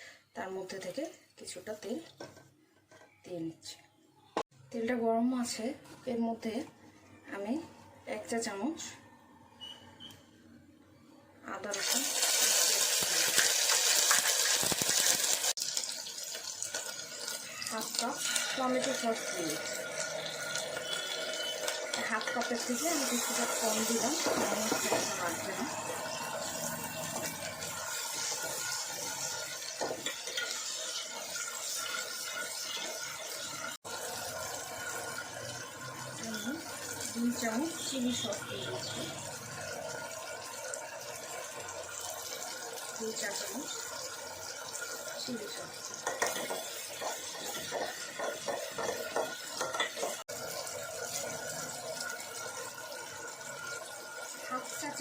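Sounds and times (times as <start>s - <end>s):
sauce sizzling in hot oil: 11.5s - 55.0s
spatula scraping pan: 19.7s - 33.4s, 45.8s - 50.3s.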